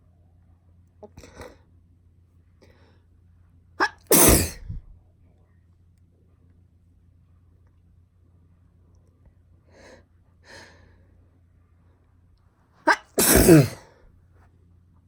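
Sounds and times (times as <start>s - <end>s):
girl sneezing: 3.8s - 4.8s, 12.9s - 13.9s.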